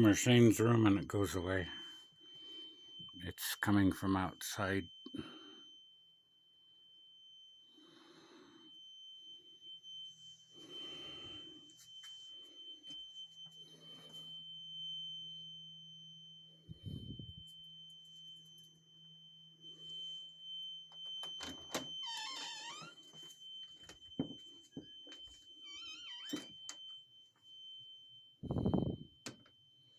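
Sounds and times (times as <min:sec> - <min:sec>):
alarm high-pitched tone: 0:00.0 - 0:06.0, 0:07.1 - 0:29.9
soft breaths: 0:10.5 - 0:14.5.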